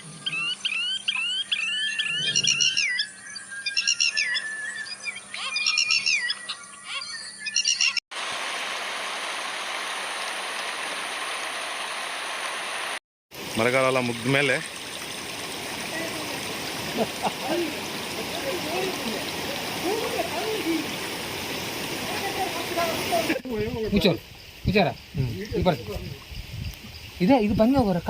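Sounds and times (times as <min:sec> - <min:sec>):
birds whistling and chirping: 0:00.0 - 0:08.0
mountain stream rushing: 0:08.2 - 0:23.6.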